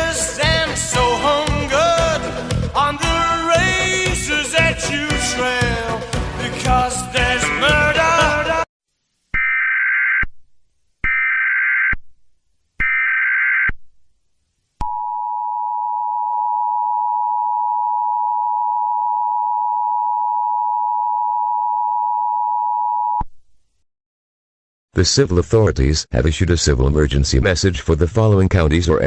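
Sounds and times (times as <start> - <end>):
music: 0.0 - 8.7.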